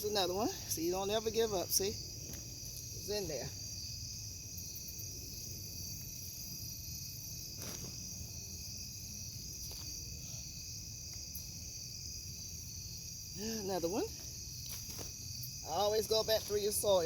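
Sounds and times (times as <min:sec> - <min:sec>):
crickets chirping: 0:00.0 - 0:17.0
faint scuffs: 0:07.5 - 0:08.2, 0:09.6 - 0:10.2, 0:14.1 - 0:15.3.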